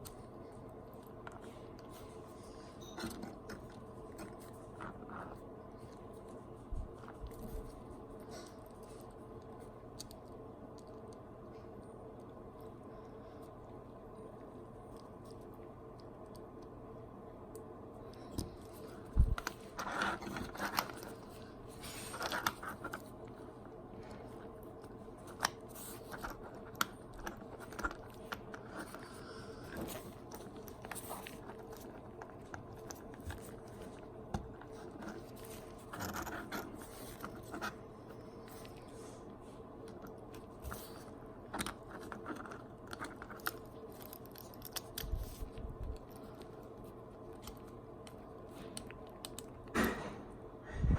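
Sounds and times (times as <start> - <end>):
faint steady hum: 0.0 - 50.9
plastic parts clicking and scraping: 18.1 - 23.4, 24.1 - 39.0, 39.9 - 50.1.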